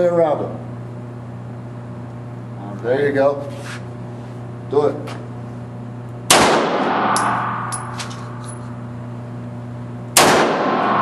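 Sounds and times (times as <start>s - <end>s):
pistol shots with echo: 6.3s - 8.0s, 10.2s - 11.0s.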